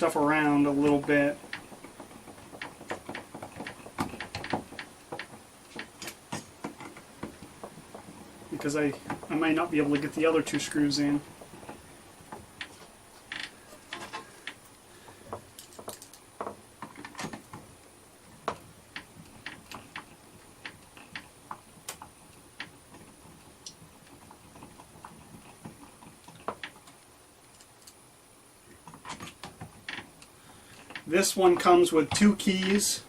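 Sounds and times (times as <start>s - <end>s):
small clicks and taps of screws: 11.4s - 17.6s, 18.4s - 28.0s, 28.7s - 31.1s.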